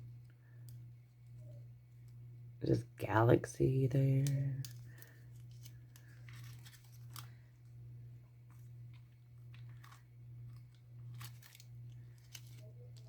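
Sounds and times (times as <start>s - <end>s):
packaging crinkling and clicks: 4.2s - 7.8s, 8.4s - 13.0s.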